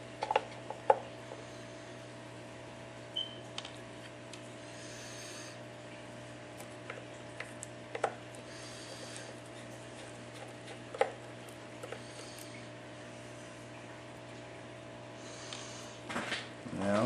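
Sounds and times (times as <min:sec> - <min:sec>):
steady electrical hum: 0:00.0 - 0:17.0.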